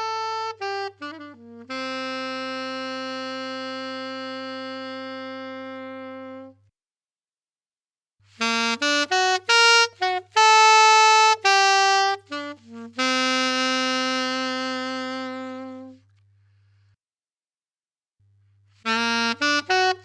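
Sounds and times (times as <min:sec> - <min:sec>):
alto saxophone playing: 0:00.0 - 0:06.7, 0:08.3 - 0:16.1, 0:18.8 - 0:20.0.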